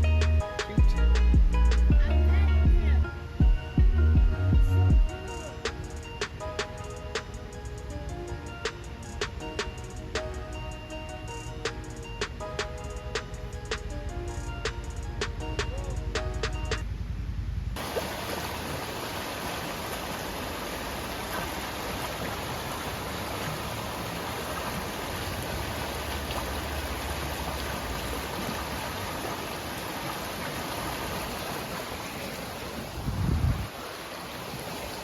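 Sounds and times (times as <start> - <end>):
water rushing: 17.8 - 35.0.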